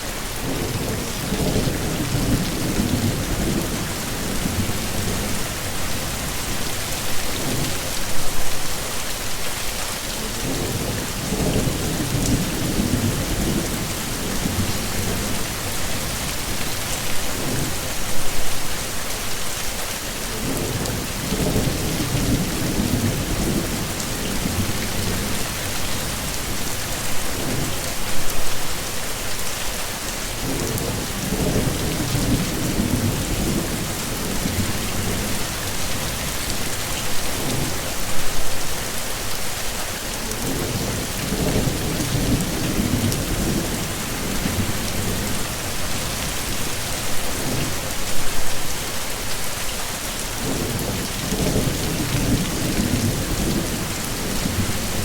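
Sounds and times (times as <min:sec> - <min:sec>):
heavy rain: 0:00.0 - 0:55.0
thunder rumbles: 0:00.3 - 0:08.4, 0:10.2 - 0:16.7, 0:20.3 - 0:28.4, 0:30.4 - 0:38.3, 0:40.4 - 0:47.8, 0:50.4 - 0:55.0.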